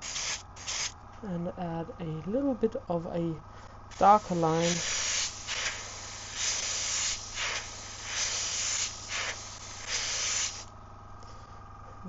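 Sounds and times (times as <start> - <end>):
airbrush spraying hiss: 0.0 - 1.0, 3.9 - 10.7.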